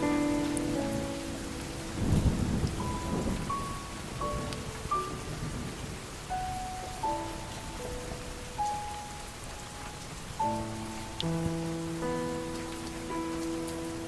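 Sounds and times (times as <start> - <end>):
low roll of thunder: 0.0 - 6.2
solo piano notes: 0.0 - 14.0
steady rain: 0.0 - 14.0.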